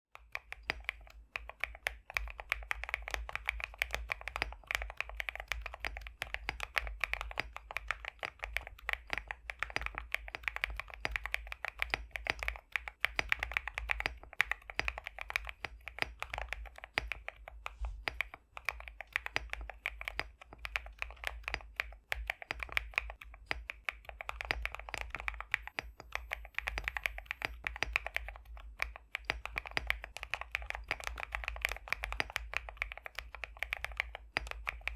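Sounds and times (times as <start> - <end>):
fast typing on mechanical keyboard: 0.1 - 34.9.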